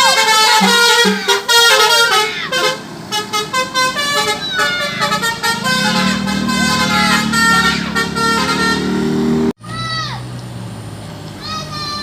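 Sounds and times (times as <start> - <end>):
musical bus horn melody: 0.0 - 9.5
engine hum: 0.1 - 12.0.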